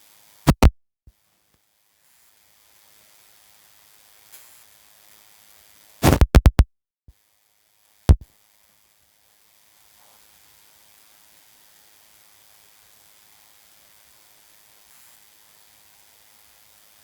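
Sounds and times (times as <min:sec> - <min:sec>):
sharp knocks: 0:06.0 - 0:06.6.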